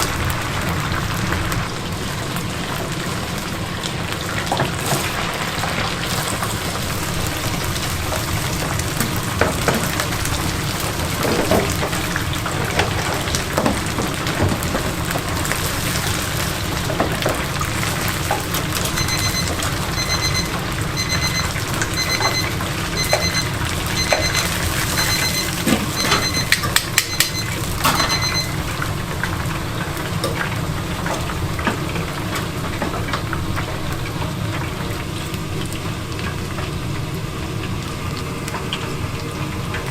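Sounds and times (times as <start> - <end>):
chicken deep-frying in oil: 0.0 - 39.9
electronic beeper: 19.0 - 28.6.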